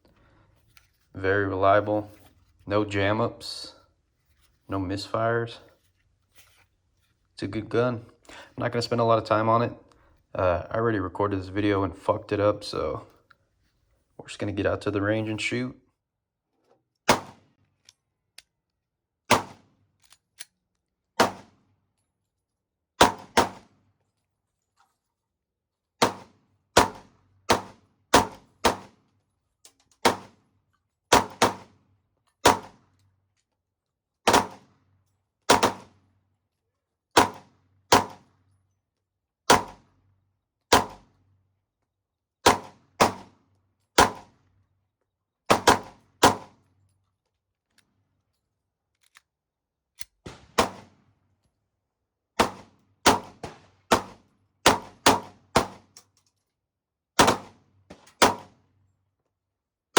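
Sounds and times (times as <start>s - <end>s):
pistol shots: 17.1s - 17.4s, 19.3s - 19.6s, 21.2s - 21.5s, 23.0s - 23.7s, 26.0s - 28.9s, 30.0s - 30.4s, 31.1s - 31.7s, 32.4s - 32.8s, 34.3s - 34.6s, 35.5s - 35.9s, 37.2s - 38.2s, 39.5s - 39.8s, 40.7s - 41.0s, 42.4s - 43.3s, 44.0s - 44.3s, 45.5s - 46.5s, 50.2s - 51.0s, 52.4s - 55.8s, 57.2s - 58.5s.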